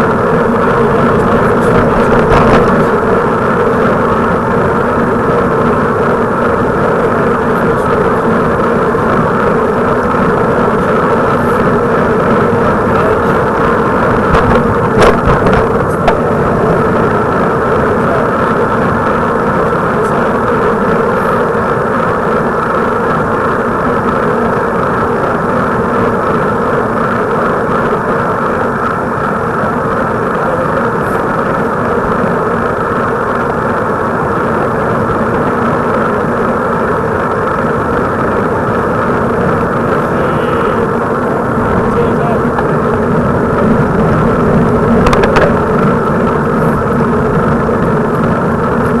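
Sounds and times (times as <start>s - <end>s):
vehicle running: 0.0s - 49.0s.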